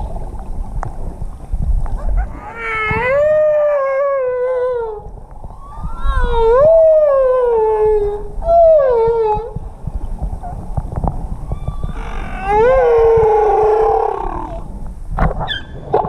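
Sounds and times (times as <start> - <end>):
humpback whale calls: 11.5 - 14.8.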